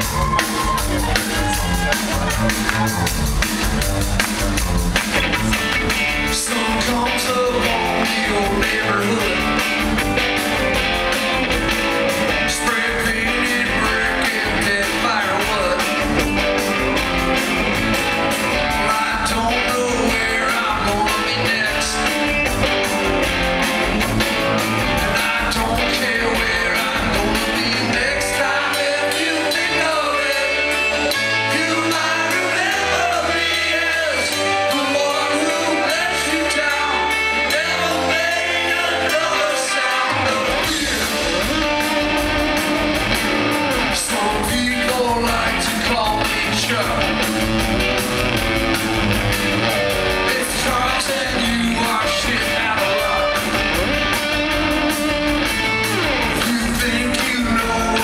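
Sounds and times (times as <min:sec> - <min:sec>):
bass notes: 0:00.0 - 0:58.0
drums: 0:00.0 - 0:58.0
electric guitar: 0:00.0 - 0:58.0
live rock band: 0:00.0 - 0:58.0
person singing: 0:05.2 - 0:09.8, 0:12.2 - 0:16.2, 0:18.7 - 0:22.4, 0:24.9 - 0:47.1, 0:50.2 - 0:55.2, 0:56.1 - 0:58.0.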